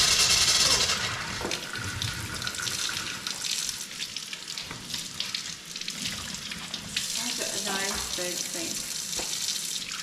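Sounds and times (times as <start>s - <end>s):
faucet water running into sink: 0.0s - 10.0s.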